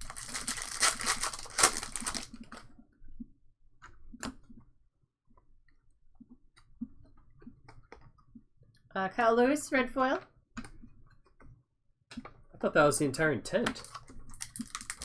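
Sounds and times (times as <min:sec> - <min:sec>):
card packs rustling: 0:00.0 - 0:02.6, 0:13.8 - 0:15.0.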